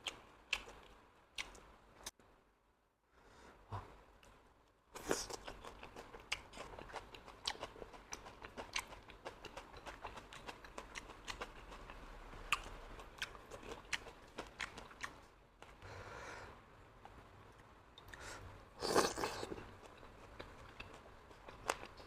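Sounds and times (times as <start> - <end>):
person chewing and crunching: 5.0 - 15.7, 18.8 - 22.0.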